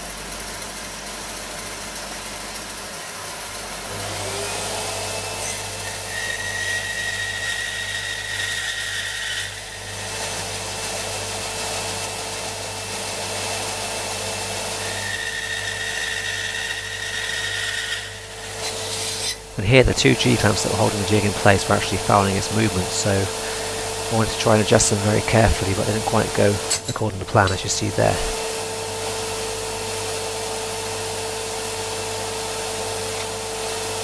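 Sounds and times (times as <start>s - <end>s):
bandsaw motor humming: 3.8s - 34.0s
high thin whine: 19.5s - 28.6s.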